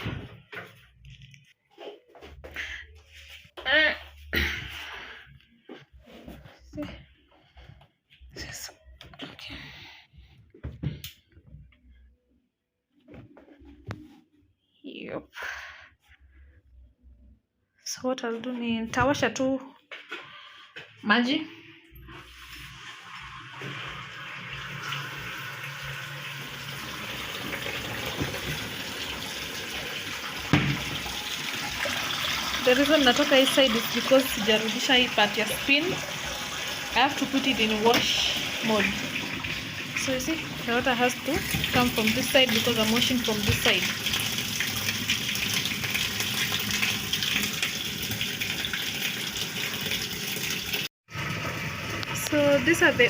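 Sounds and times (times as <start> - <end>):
water rushing into washing machine: 22.1 - 53.0.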